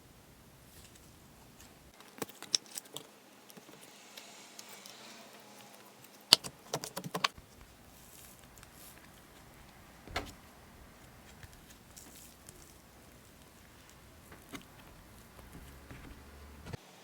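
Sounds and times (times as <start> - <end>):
slime clicking and crackling: 0.6 - 3.8, 6.1 - 16.8.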